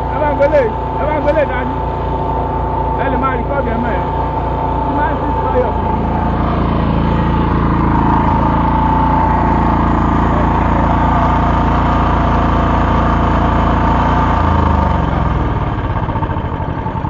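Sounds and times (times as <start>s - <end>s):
small generator engine running: 0.0s - 17.0s.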